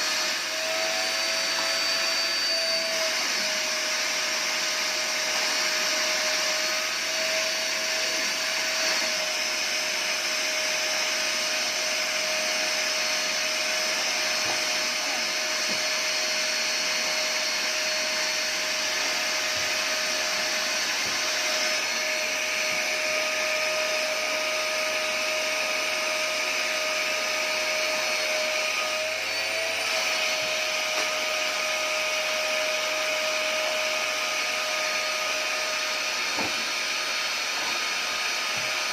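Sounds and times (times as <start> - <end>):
vacuum cleaner running: 0.0 - 38.9.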